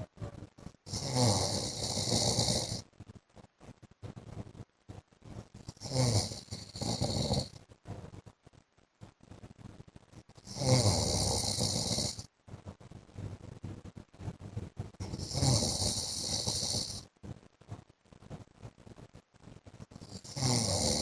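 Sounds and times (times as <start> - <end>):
man snoring: 0.9 - 2.8, 5.7 - 7.6, 10.5 - 12.2, 15.0 - 17.0, 20.0 - 21.0
quiet breathing: 13.2 - 17.1.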